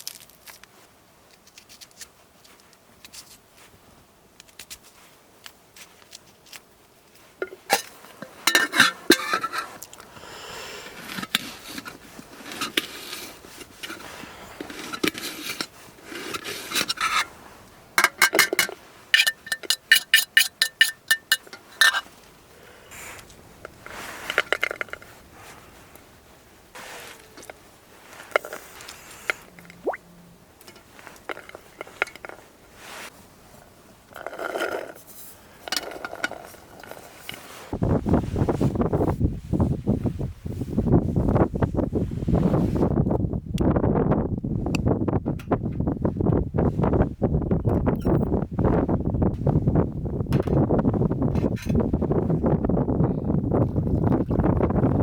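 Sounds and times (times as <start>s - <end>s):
metal cookware clinking and scraping: 7.4s - 9.7s, 18.0s - 22.0s.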